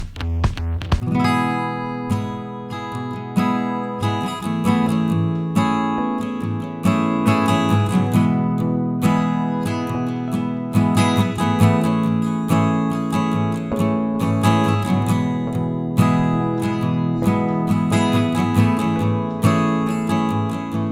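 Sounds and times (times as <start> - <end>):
strummed acoustic guitar music: 0.0 - 20.9.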